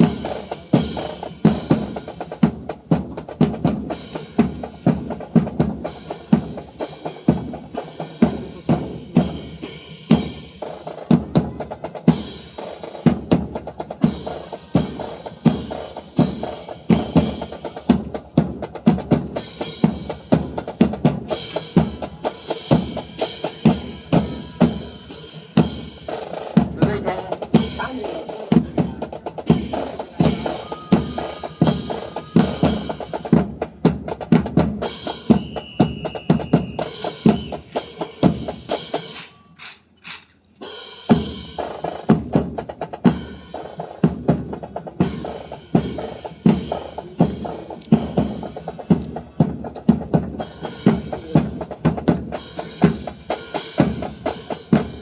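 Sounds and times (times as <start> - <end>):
rifles slapped and clacked: 39.1 - 40.7.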